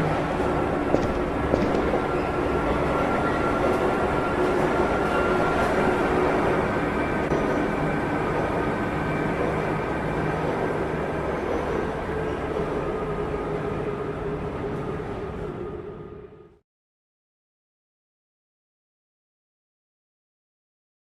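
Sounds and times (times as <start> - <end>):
train rumble and hiss: 0.0 - 16.6.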